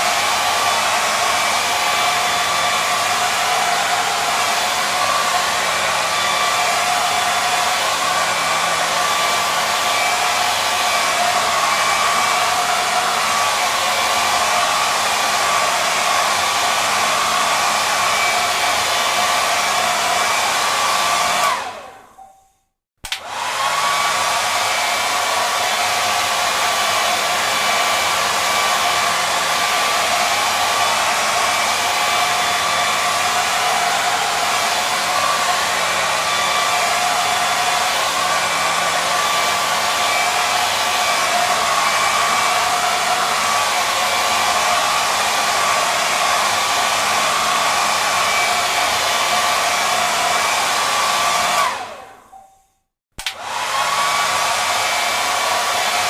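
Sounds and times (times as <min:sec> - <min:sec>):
hair dryer whirring: 0:00.0 - 0:52.5, 0:53.2 - 0:56.0
hair dryer switch click: 0:23.0 - 0:23.4, 0:53.2 - 0:53.5.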